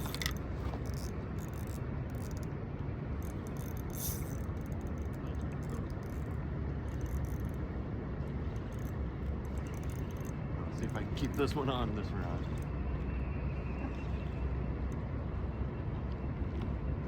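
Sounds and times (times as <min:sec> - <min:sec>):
clicks and rustles of handled gear: 0:00.0 - 0:02.5
low outdoor rumble: 0:00.0 - 0:17.0.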